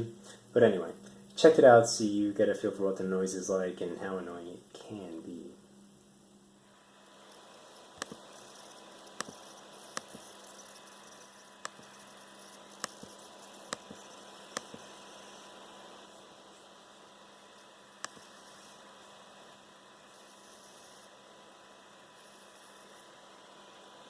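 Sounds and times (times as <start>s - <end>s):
laptop coil whine hum: 0.0s - 24.0s
sharp clicks: 11.6s - 15.0s.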